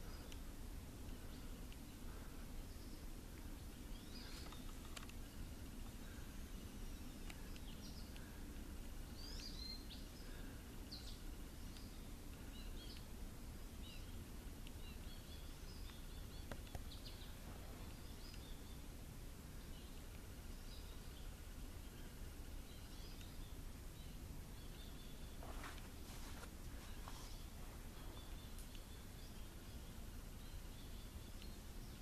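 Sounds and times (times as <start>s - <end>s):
small birds chirping: 0.0s - 32.0s.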